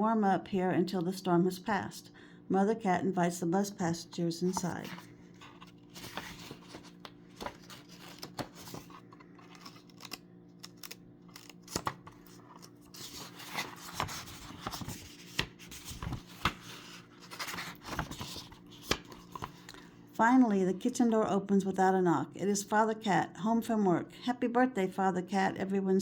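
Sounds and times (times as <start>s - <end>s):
paper pages rustling: 4.5s - 19.8s.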